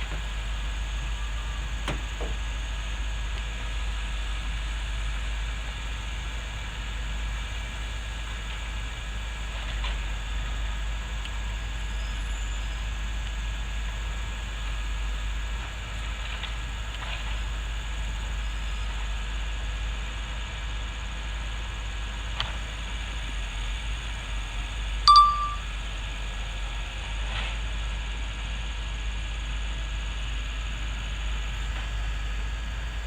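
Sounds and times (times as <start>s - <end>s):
diesel engine rumbling: 0.0s - 3.0s.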